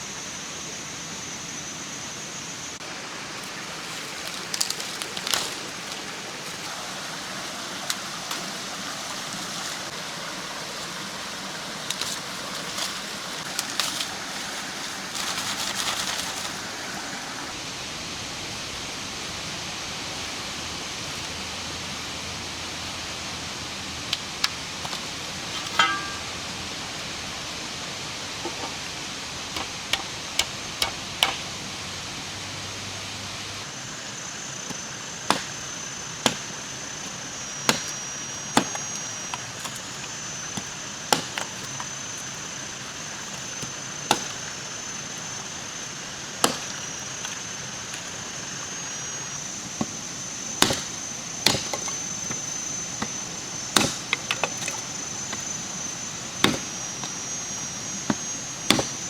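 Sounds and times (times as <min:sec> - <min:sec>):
steady background hiss: 0:00.0 - 0:59.0
sharp chopping strikes: 0:25.6 - 0:26.4, 0:35.3 - 0:36.5, 0:37.7 - 0:38.0, 0:41.1 - 0:41.5, 0:44.1 - 0:44.4, 0:46.4 - 0:46.8, 0:50.6 - 0:51.9, 0:53.8 - 0:54.6, 0:56.4 - 0:56.8, 0:58.1 - 0:59.0.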